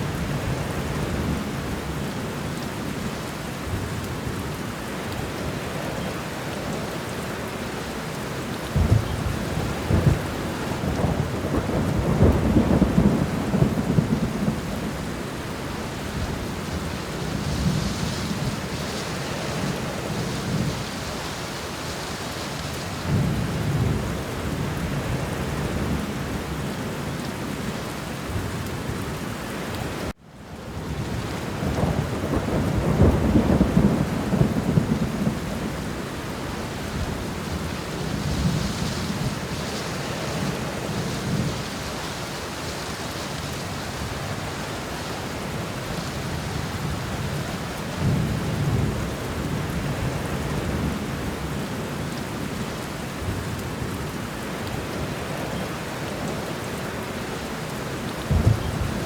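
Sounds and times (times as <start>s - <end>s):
steady rain: 0.0s - 59.0s
low thunder rumbling: 8.7s - 21.5s, 30.8s - 42.0s, 58.2s - 59.0s.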